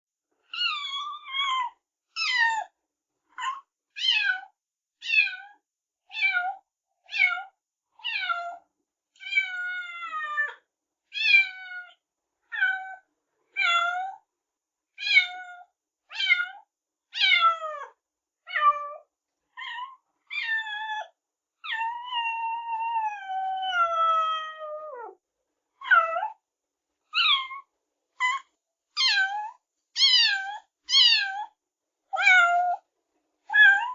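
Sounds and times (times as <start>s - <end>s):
kitten meowing: 19.6s - 21.0s, 21.6s - 25.1s, 27.1s - 27.6s, 29.0s - 31.6s, 32.2s - 32.8s, 33.5s - 33.9s.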